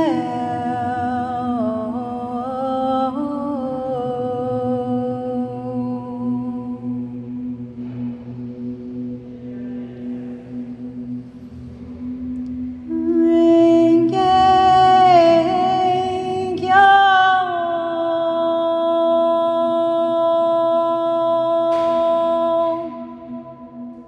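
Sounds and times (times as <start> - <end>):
woman singing wordless melody: 0.0 - 7.7, 12.9 - 24.0
steady low drone: 0.0 - 24.0.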